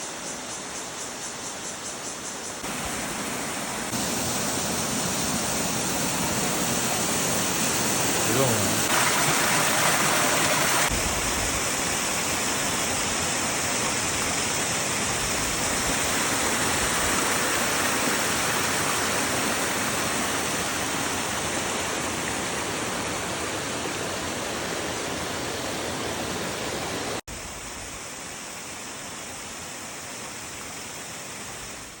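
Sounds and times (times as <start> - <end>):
waterfall rushing: 2.6 - 27.2.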